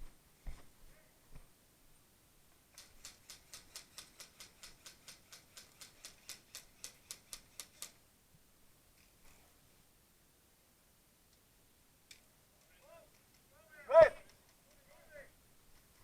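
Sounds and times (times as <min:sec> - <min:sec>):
sharp faint clicks: 0:12.1 - 0:13.5.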